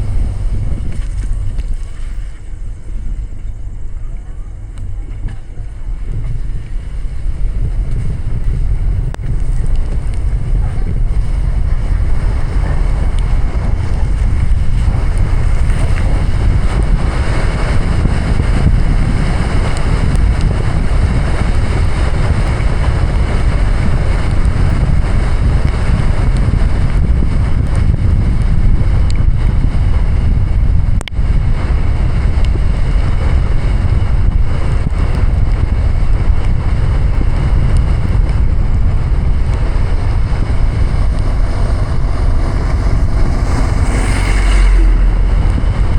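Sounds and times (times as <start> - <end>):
heavy rain rushing: 0.0 - 28.4, 35.2 - 45.9
deep engine rumble: 0.0 - 45.9
tyres on wet road: 0.0 - 45.9
wind: 0.0 - 45.9.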